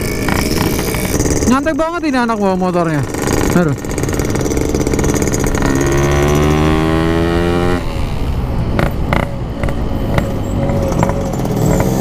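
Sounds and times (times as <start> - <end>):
sharp engine ticks: 0.0 - 6.5
two-stroke motorcycle engine revving: 0.0 - 12.0.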